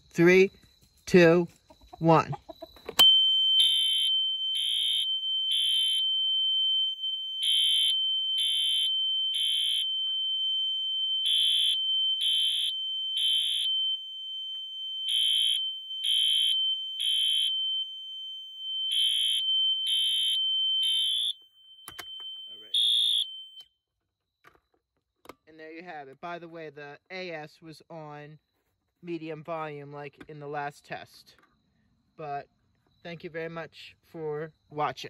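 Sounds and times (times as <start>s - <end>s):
continuous high alarm tone: 0.0s - 23.8s
fire alarm horn blasts: 3.0s - 23.6s.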